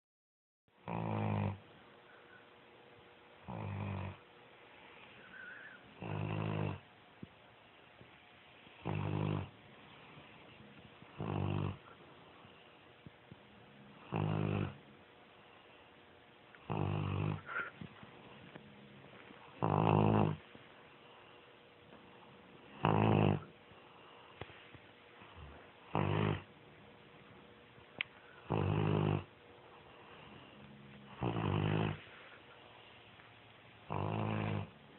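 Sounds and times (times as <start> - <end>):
dog snoring: 0.8 - 1.7, 3.4 - 4.3, 5.1 - 6.9, 8.8 - 12.7, 13.6 - 15.0, 16.5 - 20.5, 22.1 - 24.3, 25.2 - 27.4, 28.3 - 32.3, 33.8 - 34.9.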